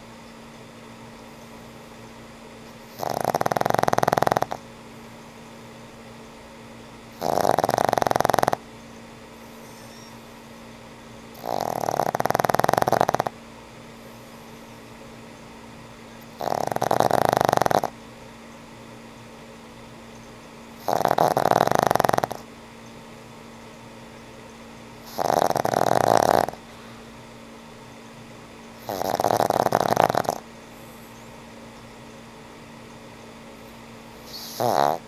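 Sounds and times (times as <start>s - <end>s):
dog snoring: 2.8s - 4.6s, 7.1s - 8.7s, 11.3s - 13.4s, 16.2s - 18.0s, 20.8s - 22.5s, 25.0s - 26.6s, 28.8s - 31.2s, 34.2s - 35.0s.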